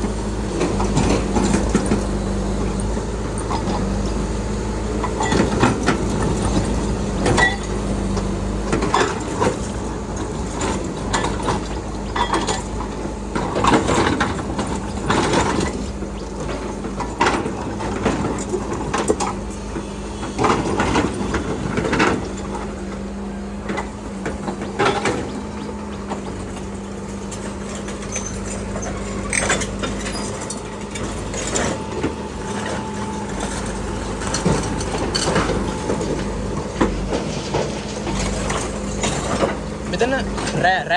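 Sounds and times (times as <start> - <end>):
excavator engine drone: 0.0 - 40.9
knocks and scrapes: 23.8 - 39.6.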